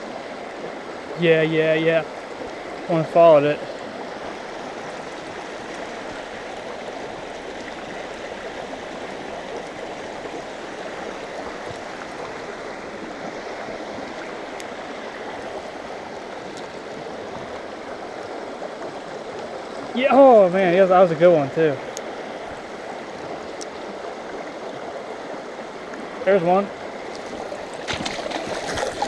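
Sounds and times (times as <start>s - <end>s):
mountain stream flowing: 0.0s - 29.0s.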